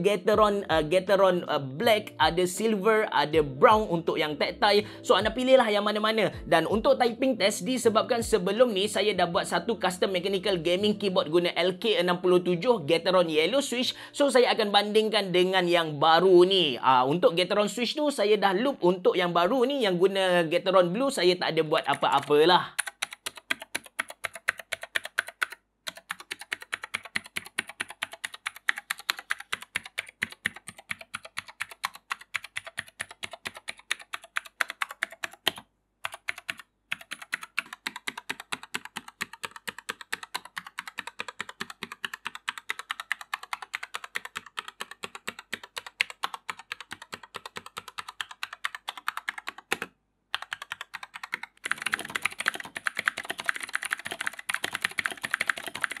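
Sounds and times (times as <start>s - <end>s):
rapid mechanical keyboard typing: 21.8s - 56.0s.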